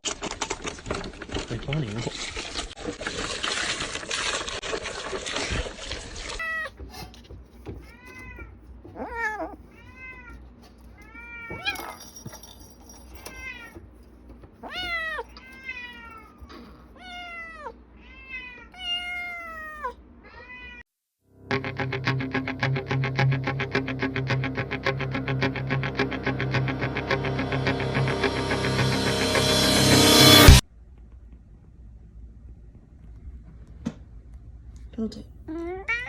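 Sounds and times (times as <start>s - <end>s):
cat meowing: 6.4s - 6.8s, 7.9s - 10.4s, 14.6s - 20.8s.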